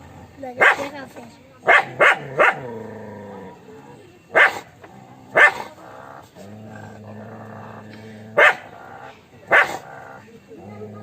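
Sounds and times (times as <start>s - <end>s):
dog barking: 0.6s - 2.8s, 4.3s - 5.8s, 8.3s - 10.2s.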